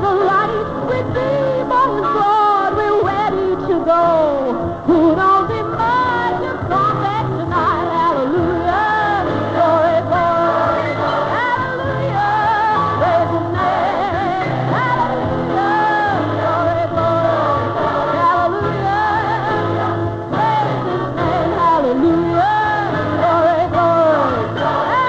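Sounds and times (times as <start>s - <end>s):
person singing with accompaniment: 0.0s - 25.0s.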